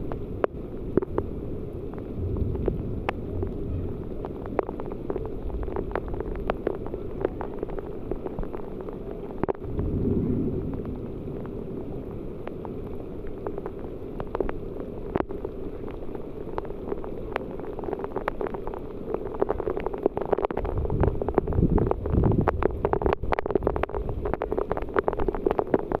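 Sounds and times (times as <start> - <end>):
low rumble: 0.0 - 8.3, 9.3 - 15.4
raindrops tapping: 0.0 - 26.0.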